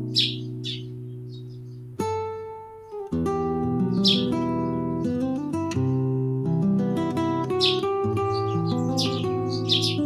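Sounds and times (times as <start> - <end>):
bird calling: 0.0 - 1.9, 3.8 - 4.9, 7.5 - 10.0
acoustic guitar plucking: 0.0 - 10.0.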